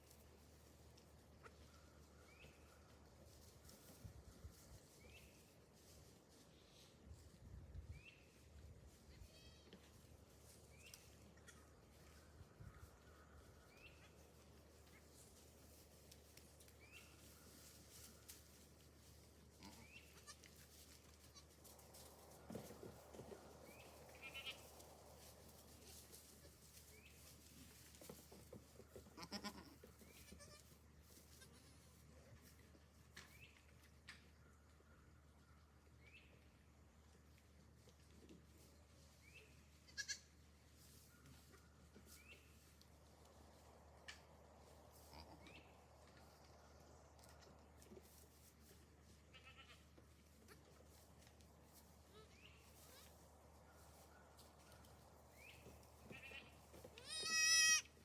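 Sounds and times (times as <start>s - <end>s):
goat bleating: 9.1s - 9.8s, 19.5s - 20.6s, 24.1s - 24.7s, 29.0s - 32.5s, 39.8s - 40.4s, 45.0s - 45.7s, 49.2s - 50.8s, 56.0s - 58.0s.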